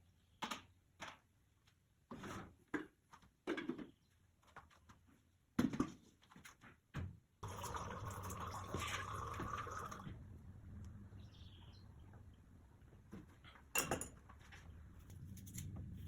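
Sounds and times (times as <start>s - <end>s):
water running: 7.4s - 10.2s.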